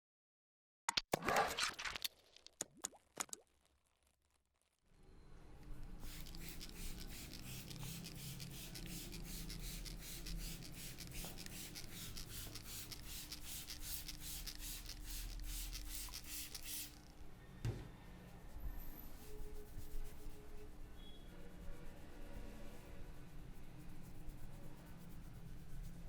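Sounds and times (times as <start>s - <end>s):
hands rubbing through hair: 6.0s - 16.9s
soft thump: 17.6s - 18.0s.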